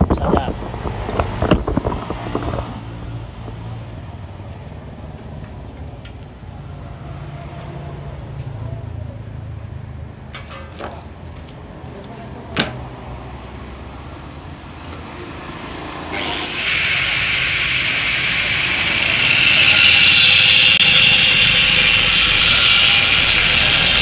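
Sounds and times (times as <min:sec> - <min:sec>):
angle grinder cutting steel: 0:15.9 - 0:24.0.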